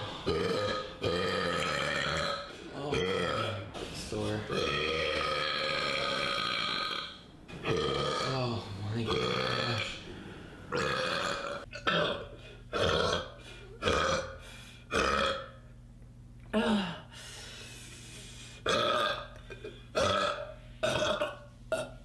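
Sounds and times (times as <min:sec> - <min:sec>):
person belching: 0:00.2 - 0:03.7, 0:04.5 - 0:10.0, 0:10.7 - 0:15.6, 0:18.7 - 0:22.0.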